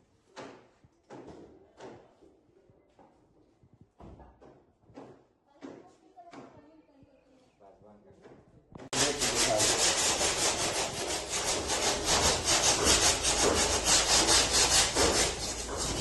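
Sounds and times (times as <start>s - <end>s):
abrasive scraping on metal panel: 9.0s - 16.0s.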